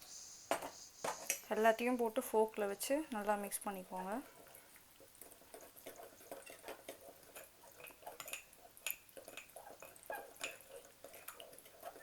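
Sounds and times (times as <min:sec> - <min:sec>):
wet batter stirring: 0:01.2 - 0:12.0.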